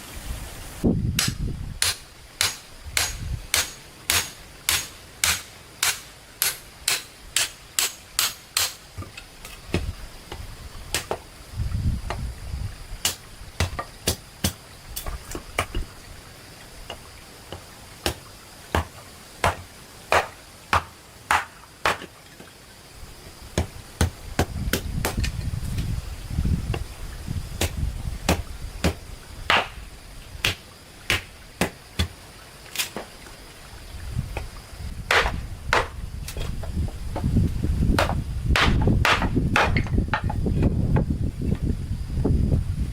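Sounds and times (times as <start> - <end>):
hand tool striking: 1.2 - 8.8.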